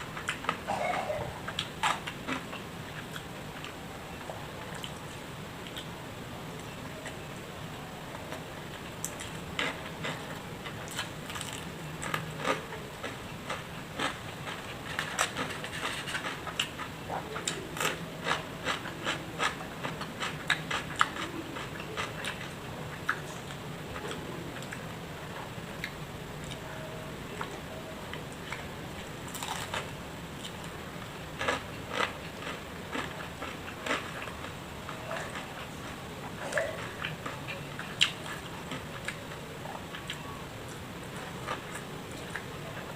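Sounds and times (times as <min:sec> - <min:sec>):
low steady hum: 0:00.0 - 0:42.9
person chewing with crunches: 0:00.1 - 0:05.9, 0:08.7 - 0:26.7, 0:27.3 - 0:42.9.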